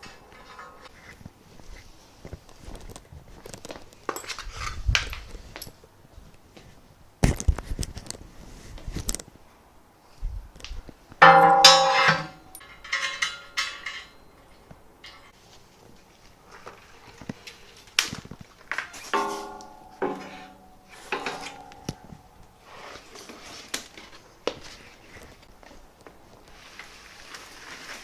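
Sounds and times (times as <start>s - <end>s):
parts and packaging clattering: 11.2s - 15.5s, 16.6s - 25.4s.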